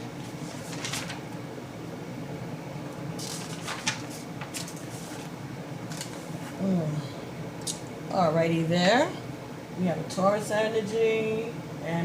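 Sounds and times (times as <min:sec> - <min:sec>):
paper rustling and tapping: 0:00.0 - 0:01.2, 0:03.2 - 0:05.3
low room hum: 0:00.0 - 0:12.0.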